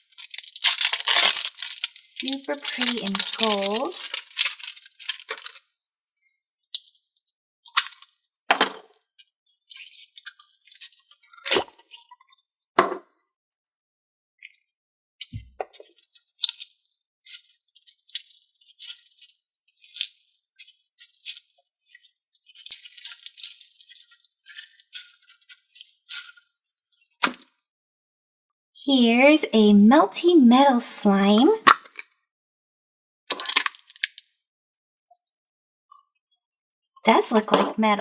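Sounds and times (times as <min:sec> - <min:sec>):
putty crackling and squishing: 0:00.0 - 0:05.6.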